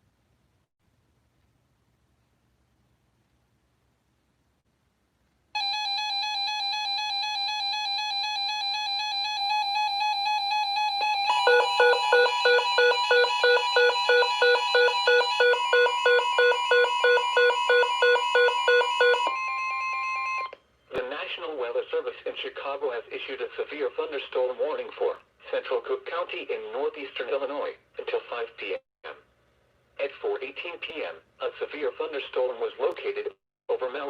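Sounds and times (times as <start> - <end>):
fast beeping alarm: 5.6 - 20.6
second steady tone: 11.2 - 19.6
steady electronic tone: 11.2 - 20.6.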